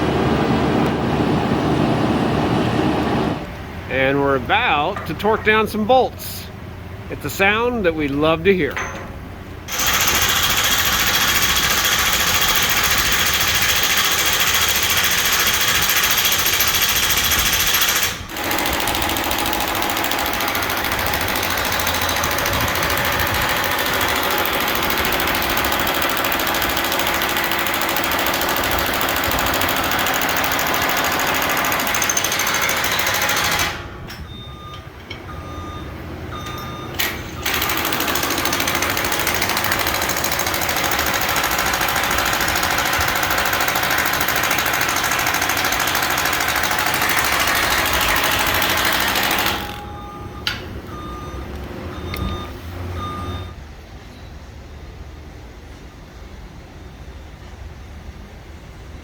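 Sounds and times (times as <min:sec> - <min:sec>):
pneumatic impact wrench rattling: 0:08.8 - 0:34.2, 0:37.0 - 0:49.9.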